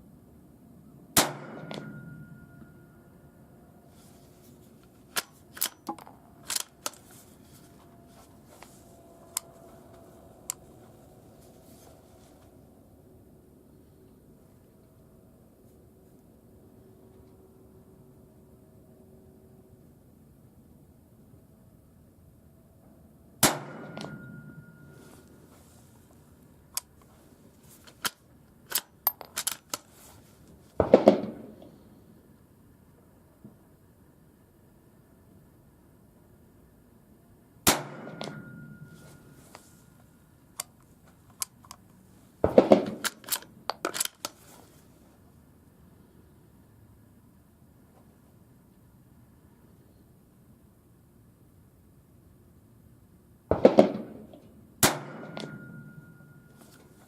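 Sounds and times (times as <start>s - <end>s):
suppressed rifle shot: 1.2s - 2.4s, 23.4s - 24.4s, 37.6s - 38.8s, 54.8s - 56.0s
rifle bolt being worked: 5.0s - 7.1s, 27.8s - 30.0s, 40.6s - 41.9s, 42.7s - 44.4s.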